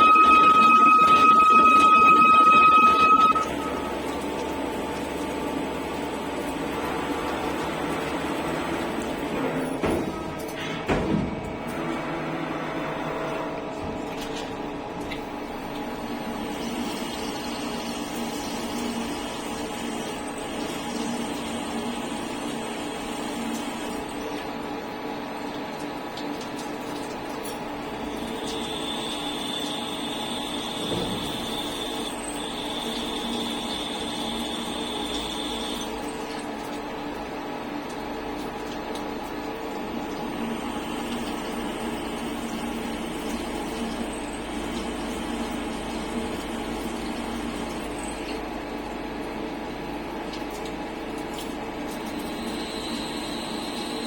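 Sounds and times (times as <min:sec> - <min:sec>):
high machine whine: 0:00.0 - 0:05.2.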